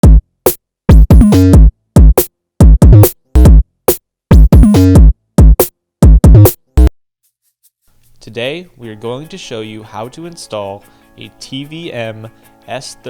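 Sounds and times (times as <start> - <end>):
electronic music with drum machine: 0.0 - 7.0.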